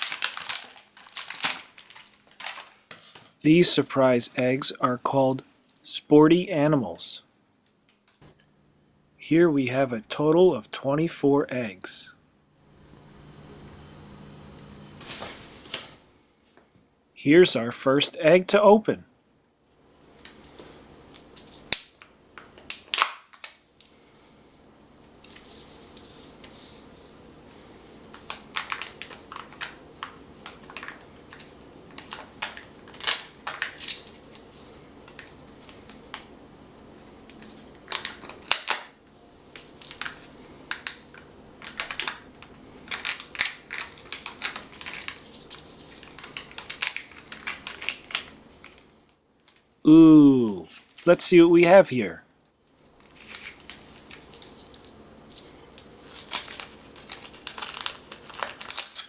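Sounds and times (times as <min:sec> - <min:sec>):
wrapper crinkling: 0:00.0 - 0:03.4, 0:20.0 - 0:23.9, 0:27.9 - 0:36.3, 0:37.0 - 0:49.7, 0:50.6 - 0:51.1, 0:52.8 - 0:59.0.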